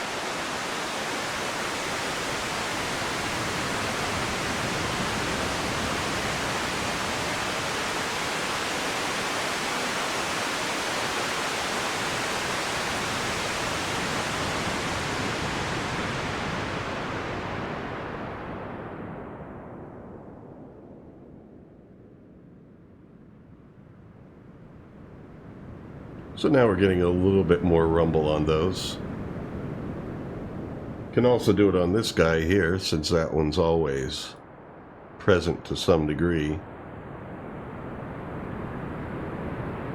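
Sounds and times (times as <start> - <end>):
synthesized ocean wave hiss: 0.0 - 20.9, 34.9 - 39.9.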